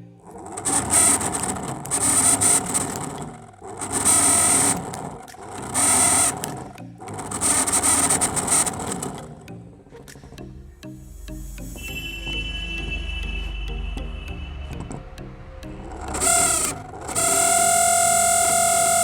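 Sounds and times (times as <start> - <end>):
fan motor grinding rattle: 0.0 - 10.4, 14.8 - 19.0.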